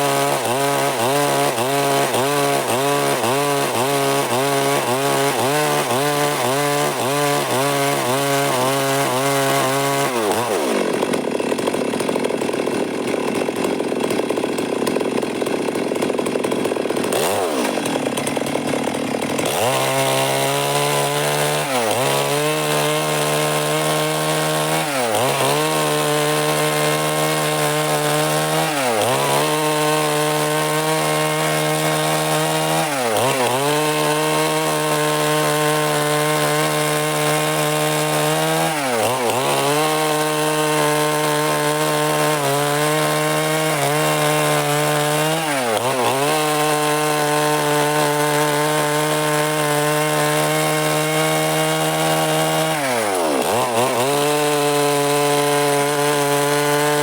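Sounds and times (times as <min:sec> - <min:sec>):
chainsaw cutting wood: 0:00.0 - 0:57.0.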